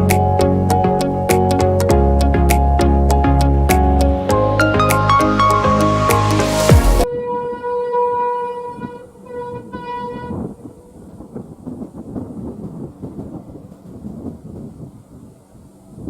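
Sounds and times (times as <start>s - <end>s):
locomotive horn: 7.1s - 10.9s
train rumble and clatter: 11.1s - 16.0s.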